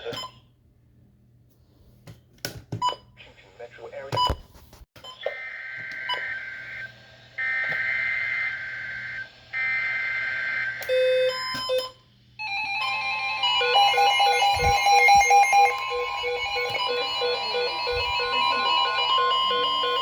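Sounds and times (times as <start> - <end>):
beeps: 13.4 - 20.0
pulsing alert tone: 13.4 - 20.0
warbling digital data tones: 13.4 - 20.0.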